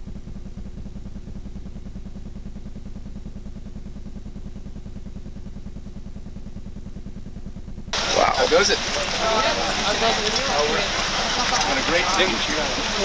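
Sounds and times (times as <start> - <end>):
motor running steadily: 0.0 - 13.0.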